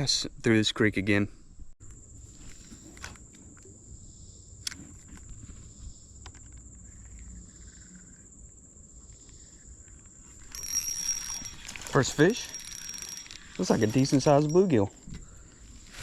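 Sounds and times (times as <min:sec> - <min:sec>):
high-pitched insect trill: 0:01.8 - 0:16.0.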